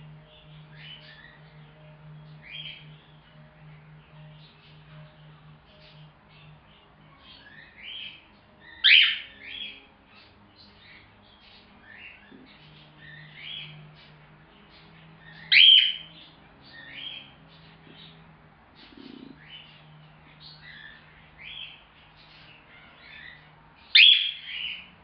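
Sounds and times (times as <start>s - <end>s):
loud bird calls: 0.0s - 25.0s
cockatiel chirping: 7.1s - 10.3s, 15.3s - 16.1s, 22.7s - 24.8s.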